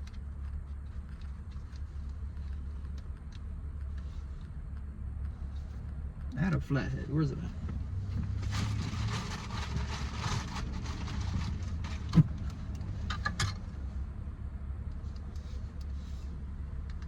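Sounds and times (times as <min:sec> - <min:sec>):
steady low hum: 0:00.0 - 0:17.0
rustling and handling noises: 0:07.6 - 0:13.6.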